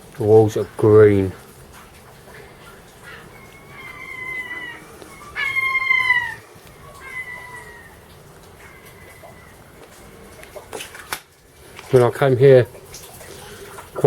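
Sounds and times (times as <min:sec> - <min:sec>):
animal meow-like cries: 0:03.1 - 0:09.6.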